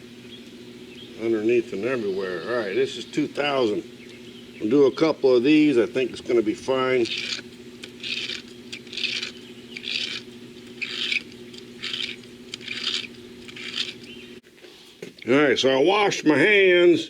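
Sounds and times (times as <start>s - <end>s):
faint steady hum: 0.0s - 17.0s
hissing sanding strokes: 5.8s - 14.4s.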